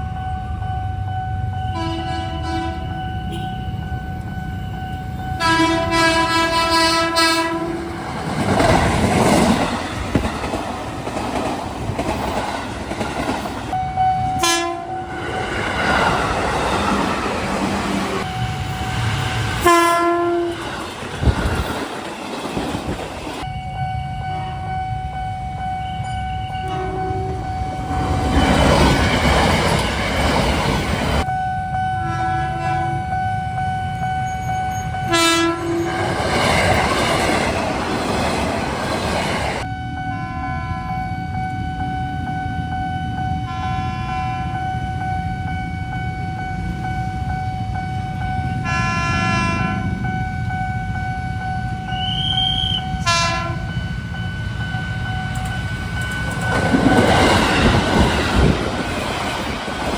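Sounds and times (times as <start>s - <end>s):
electric trains passing: 0.0s - 59.9s
level-crossing warning signal: 0.0s - 59.9s
train horn blast: 1.7s - 3.7s, 5.4s - 8.0s, 13.7s - 15.2s, 19.6s - 20.6s, 23.4s - 24.9s, 25.9s - 28.1s, 32.0s - 33.2s, 35.0s - 36.2s, 43.4s - 44.6s, 48.5s - 50.0s, 51.9s - 53.8s.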